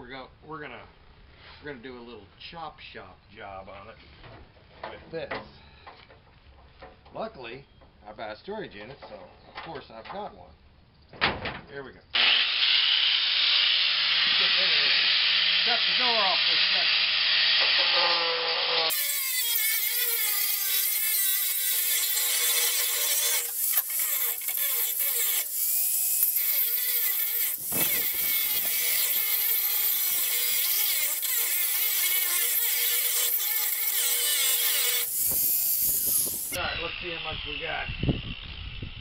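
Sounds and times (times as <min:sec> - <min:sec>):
angle grinder cutting metal: 0:12.2 - 0:39.0.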